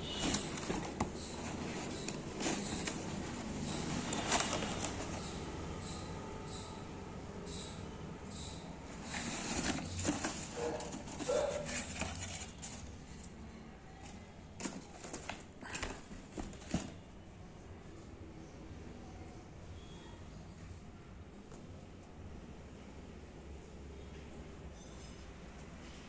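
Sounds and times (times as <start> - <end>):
shoebox packaging rustling: 0.0 - 5.5, 8.8 - 13.4, 14.0 - 17.1.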